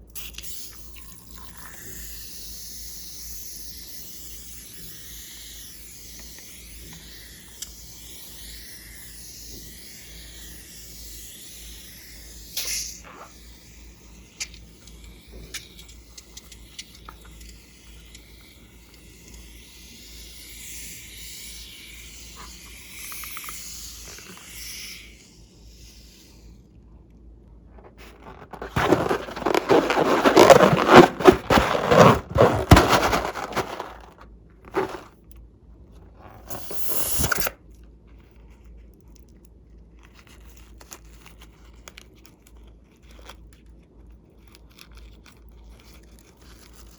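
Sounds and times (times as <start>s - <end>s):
slime crackling hiss: 0.2s - 26.4s, 28.0s - 35.1s.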